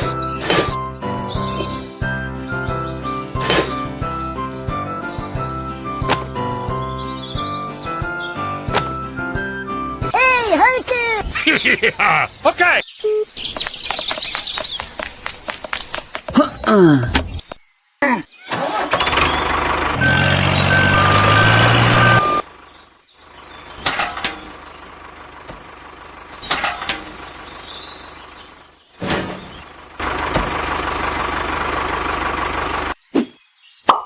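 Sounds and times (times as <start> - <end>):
truck engine running: 0.0 - 10.1, 18.7 - 28.7, 29.3 - 33.0
reversing alarm beeping: 20.0 - 22.4.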